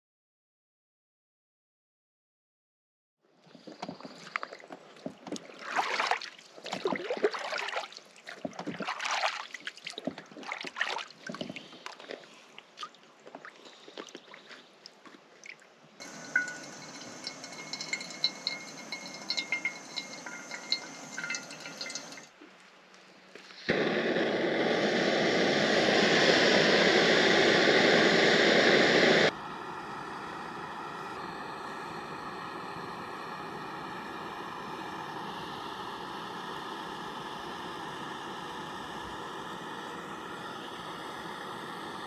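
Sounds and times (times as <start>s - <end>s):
lake water lapping and splashing: 3.4s - 16.5s
steady hiss: 16.0s - 22.3s, 23.0s - 42.0s.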